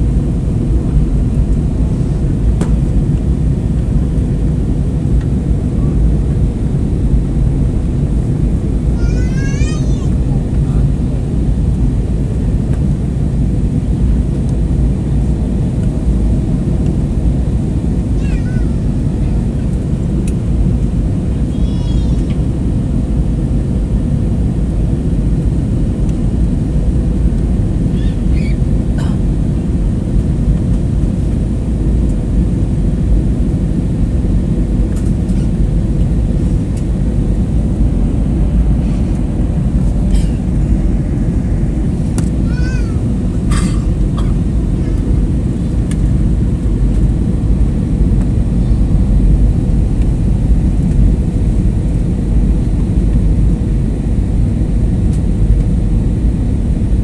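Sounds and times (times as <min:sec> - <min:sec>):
airliner cabin noise: 0:00.0 - 0:57.0
high-pitched cries: 0:09.0 - 0:10.2, 0:42.4 - 0:43.0.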